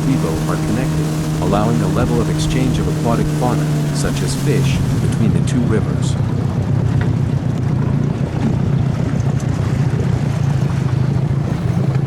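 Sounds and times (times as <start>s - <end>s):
motorboat engine running: 0.0s - 12.0s
water noise: 0.0s - 12.0s
wind: 0.0s - 12.0s.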